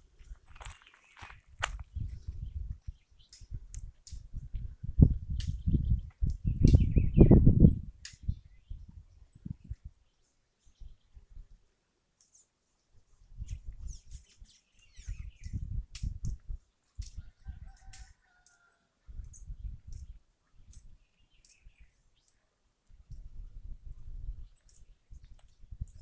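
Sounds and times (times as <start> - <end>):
small birds chirping: 0.0 - 26.0
distant rooster crowing: 17.2 - 19.0.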